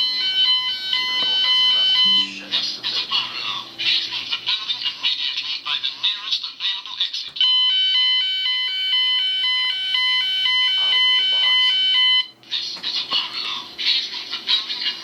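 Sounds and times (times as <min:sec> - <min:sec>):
fire alarm two-tone sounder: 0:00.0 - 0:02.8, 0:07.4 - 0:12.4.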